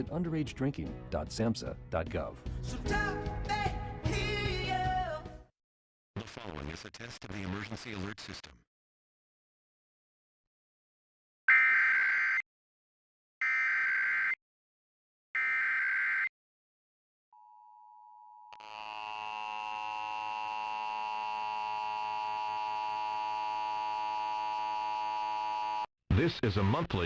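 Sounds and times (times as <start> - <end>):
loud steady attention tone: 18.4 - 25.9.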